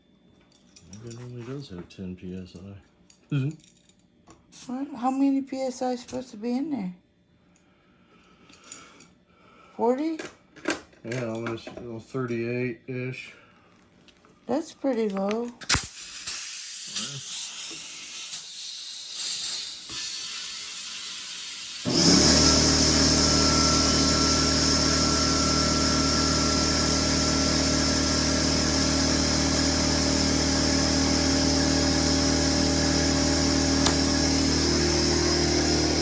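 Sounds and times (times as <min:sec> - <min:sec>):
air compressor running: 0:15.7 - 0:36.0.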